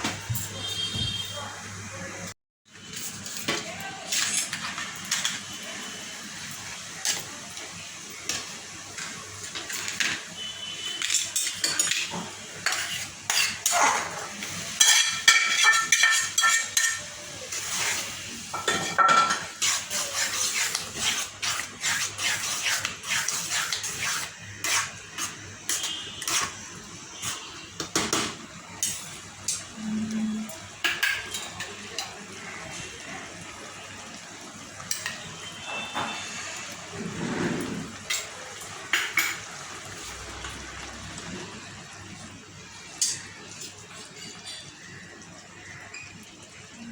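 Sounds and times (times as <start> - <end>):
metal utensil scraping a pan: 11.0 - 14.2, 14.8 - 26.6.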